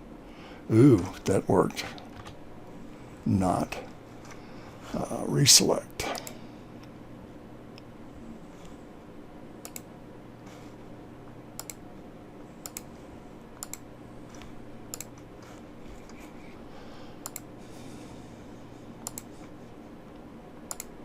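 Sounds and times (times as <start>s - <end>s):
faint steady hum: 0.0s - 21.0s
computer mouse and key clicks: 6.1s - 6.4s, 9.6s - 9.9s, 11.6s - 11.8s, 12.6s - 12.9s, 13.6s - 16.2s, 17.2s - 17.5s, 19.0s - 19.6s, 20.7s - 21.0s.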